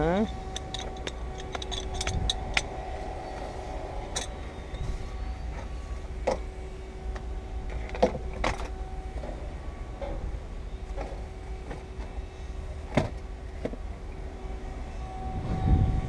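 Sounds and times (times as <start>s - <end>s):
low hum and rumble: 0.0s - 16.0s
tools clicking and knocking: 0.3s - 2.7s.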